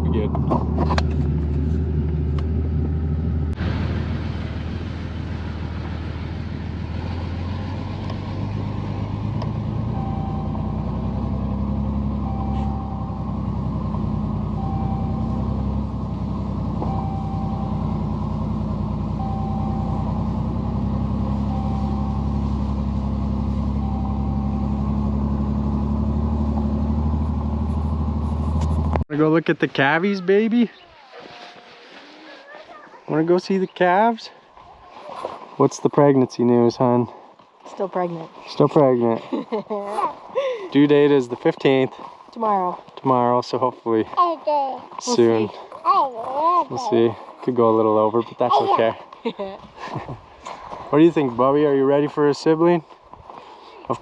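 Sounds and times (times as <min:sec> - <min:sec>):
vehicle engine droning: 0:00.0 - 0:29.1
short beeps: 0:09.7 - 0:26.0.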